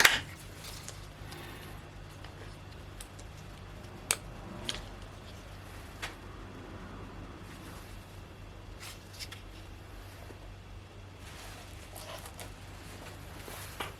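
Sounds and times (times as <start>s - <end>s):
steady low hum: 0.0s - 13.9s.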